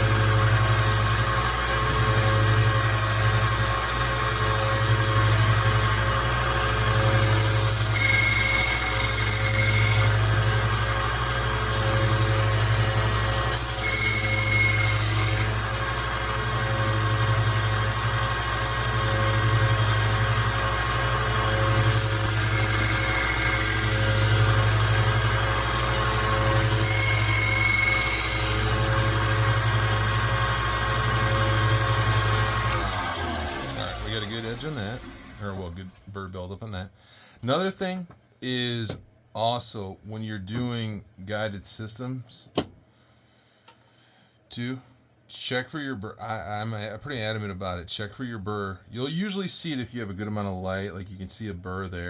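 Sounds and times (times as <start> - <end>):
belt sander running: 0.0 - 35.7.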